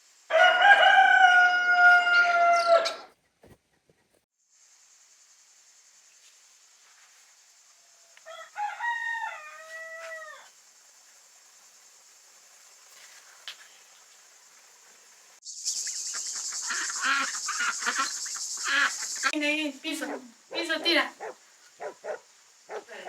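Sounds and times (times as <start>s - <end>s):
insect chorus: 0.0s - 3.0s, 4.4s - 23.0s
rooster crowing: 0.3s - 3.1s, 8.2s - 10.5s
crickets chirring: 4.4s - 23.0s.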